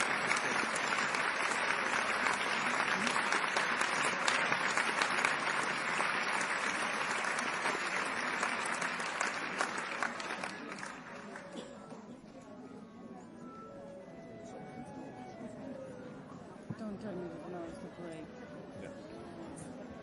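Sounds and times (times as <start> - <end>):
audience applauding: 0.0 - 11.6.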